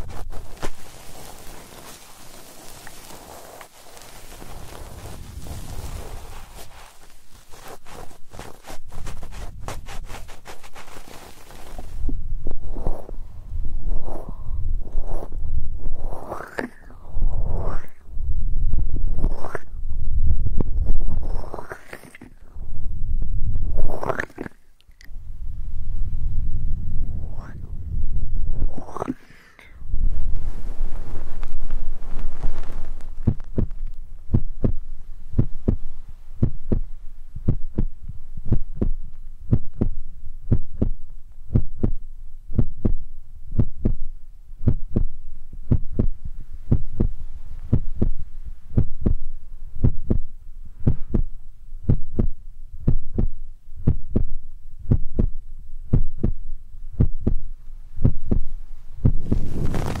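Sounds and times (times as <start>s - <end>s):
soft low tapping thumps: 7.3s - 16.0s, 18.2s - 21.2s, 29.9s - 60.0s.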